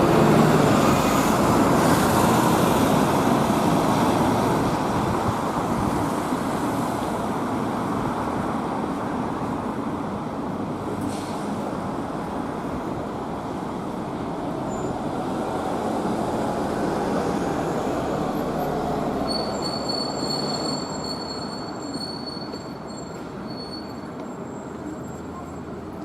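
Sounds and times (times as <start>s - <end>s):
tram running past: 0.0s - 26.0s
high thin wheel squeal: 19.2s - 25.7s.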